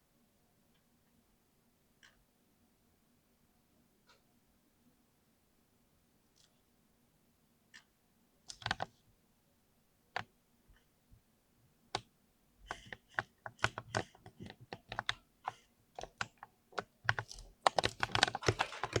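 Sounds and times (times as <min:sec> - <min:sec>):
mechanical keyboard keys clacking: 0:08.5 - 0:08.9, 0:12.7 - 0:19.0.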